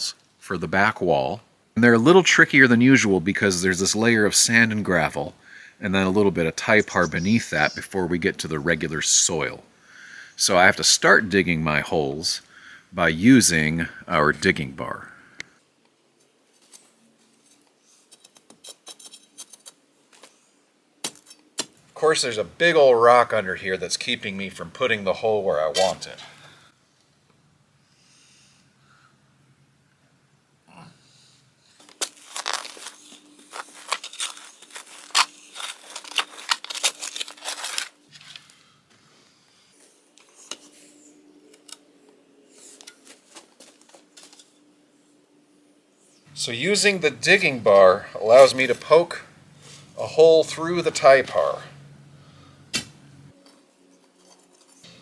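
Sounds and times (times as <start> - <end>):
digging bar tapping into gravel: 21.0 - 21.8, 52.7 - 53.0
digging bar striking gravel and rock: 21.0 - 22.8, 25.6 - 26.5, 31.8 - 38.5, 46.6 - 51.7, 52.4 - 55.0.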